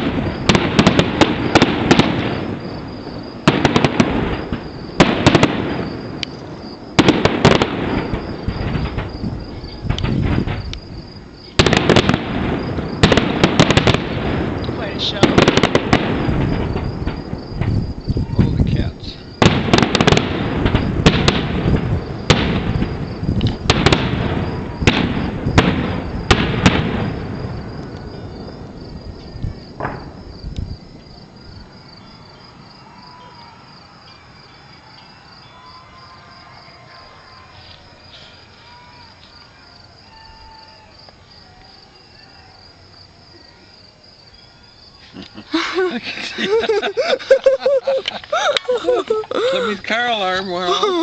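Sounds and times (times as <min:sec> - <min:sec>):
fireworks bangs and crackling: 0:00.0 - 0:33.1
high insect trill: 0:00.0 - 0:51.0.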